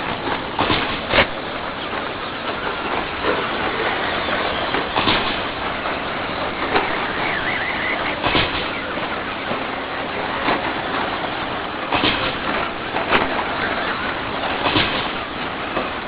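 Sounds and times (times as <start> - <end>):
trucks clattering: 0.0 - 16.0
rc truck motors hissing: 2.7 - 11.2
wavering motor whine: 2.9 - 11.8.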